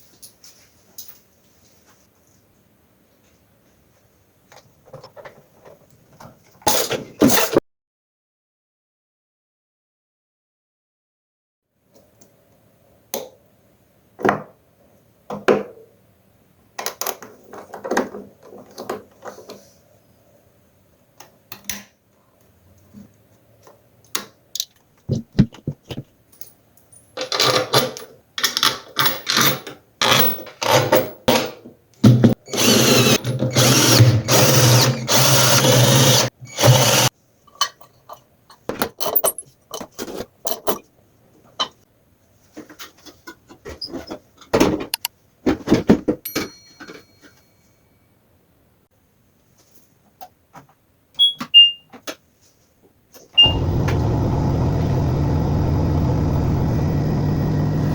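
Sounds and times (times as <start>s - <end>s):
knocks and clatter of parts: 4.5s - 7.6s, 24.6s - 35.6s, 36.6s - 40.9s, 42.6s - 47.5s
power drill running: 32.5s - 37.1s, 53.4s - 57.9s.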